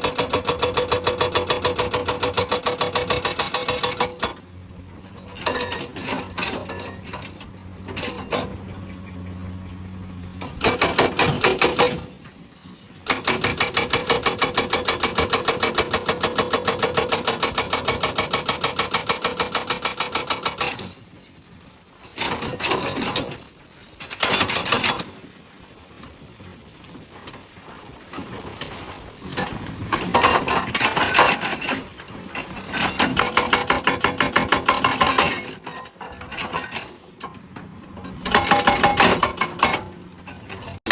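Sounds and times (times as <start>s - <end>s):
hydraulic breaker hammering rock: 0.0s - 4.4s, 10.4s - 12.2s, 13.0s - 21.0s, 24.1s - 25.1s, 29.4s - 36.9s, 38.1s - 40.9s
excavator engine running: 0.0s - 23.2s, 27.8s - 40.9s.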